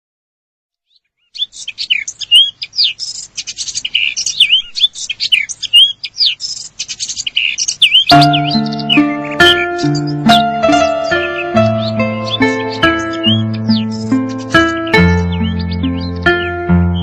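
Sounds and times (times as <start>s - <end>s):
birds chirping and whistling: 0.9s - 17.0s
keyboard music: 8.1s - 17.0s.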